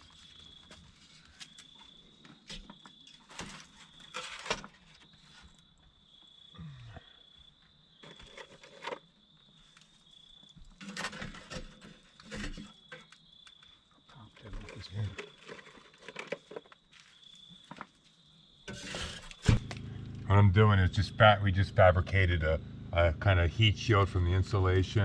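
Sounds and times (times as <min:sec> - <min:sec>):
handling knocks and scrapes: 0:02.3 - 0:05.6, 0:08.0 - 0:13.2, 0:14.4 - 0:18.1, 0:18.7 - 0:19.8.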